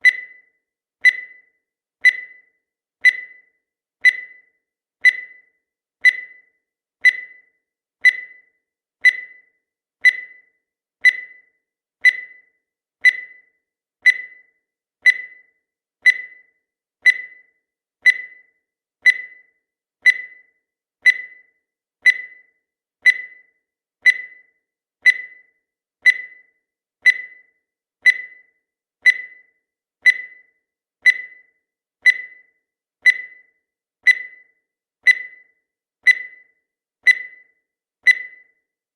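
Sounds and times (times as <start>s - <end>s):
short high-pitched beeps: 0.0s - 13.5s, 14.1s - 14.5s, 15.1s - 15.5s, 16.1s - 16.5s, 17.1s - 17.5s, 18.1s - 18.5s, 19.1s - 19.5s, 20.1s - 20.5s, 22.1s - 22.5s, 23.1s - 23.5s, 24.1s - 24.5s, 25.1s - 25.5s, 26.1s - 26.5s, 27.1s - 27.5s, 28.1s - 28.5s, 29.1s - 38.6s.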